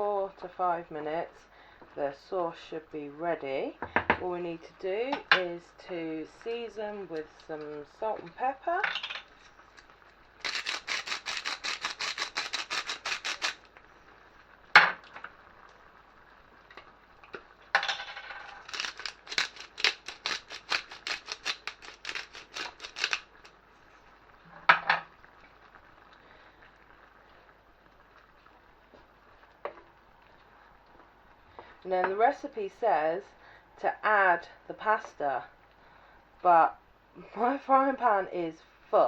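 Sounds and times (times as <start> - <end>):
pepper mill grinding clicks: 10.4 - 13.6, 18.4 - 23.5.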